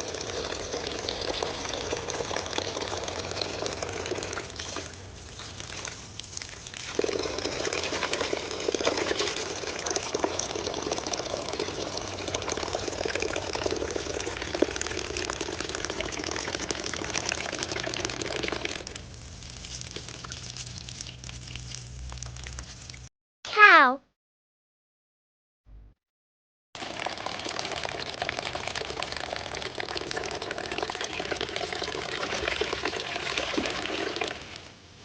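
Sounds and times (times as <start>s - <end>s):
dense crackling and crinkling: 2.6s - 10.7s, 18.2s - 23.1s.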